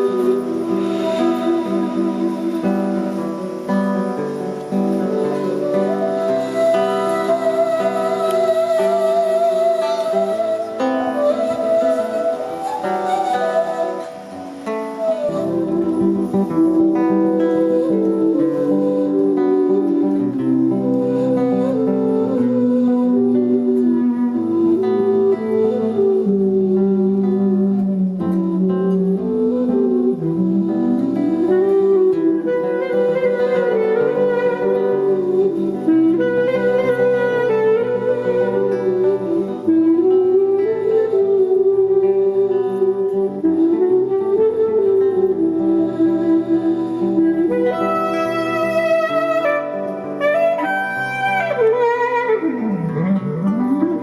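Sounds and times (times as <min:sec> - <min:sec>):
held wavering high tone: 0:00.0 - 0:54.0
plucked guitar notes: 0:00.0 - 0:54.0.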